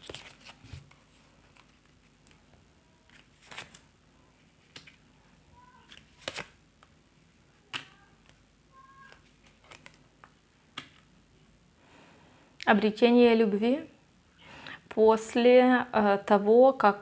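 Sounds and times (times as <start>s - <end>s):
cards snapping and tapping: 4.7s - 5.0s, 5.9s - 6.5s, 9.1s - 11.0s.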